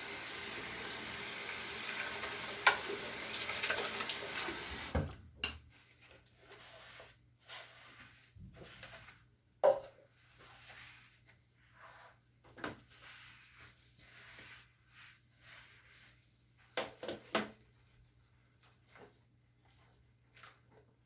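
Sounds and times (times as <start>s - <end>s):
soft rubbing or wiping: 5.7s - 9.3s, 10.1s - 16.7s.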